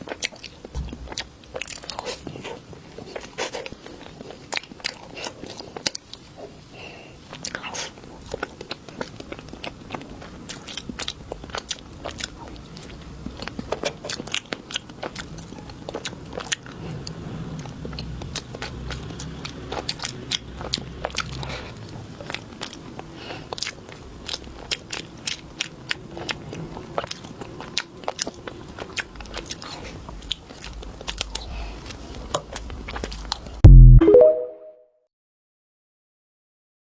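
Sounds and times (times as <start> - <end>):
crunchy bites and chewing: 7.3 - 21.6.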